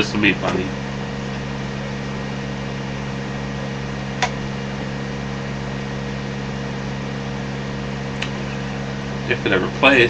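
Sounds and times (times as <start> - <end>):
electrical hum with low tones: 0.0 - 10.0
sharp click: 4.2 - 4.4.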